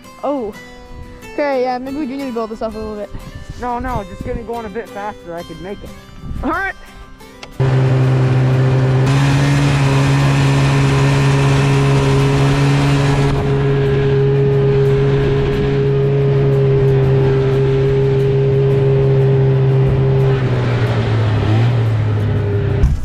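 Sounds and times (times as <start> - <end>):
snowmobile engine at high revs: 7.5 - 23.0.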